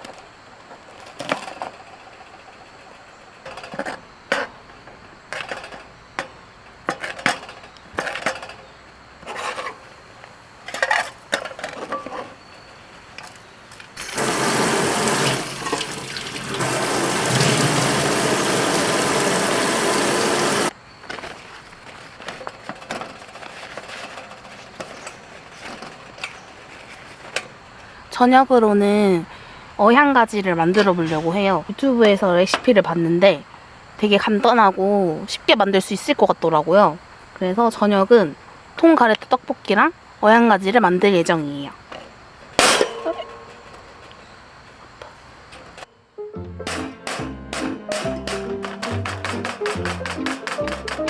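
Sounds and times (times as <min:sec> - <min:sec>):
water running: 0:14.0 - 0:20.7.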